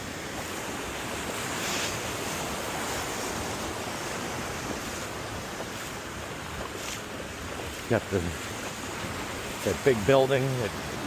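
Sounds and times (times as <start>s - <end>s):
small ocean waves washing: 0.0s - 11.0s.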